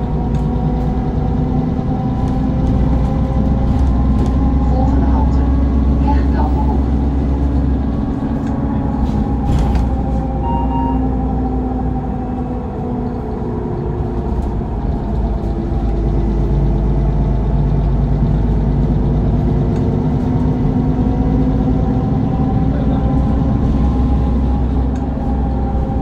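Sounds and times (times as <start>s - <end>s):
bus engine running: 0.0s - 26.0s
short beep: 10.4s - 11.3s.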